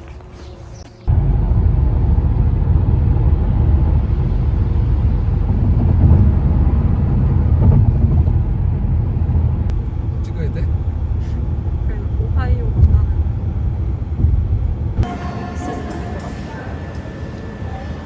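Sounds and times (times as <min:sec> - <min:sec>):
car driving on road rumble: 0:01.0 - 0:15.1.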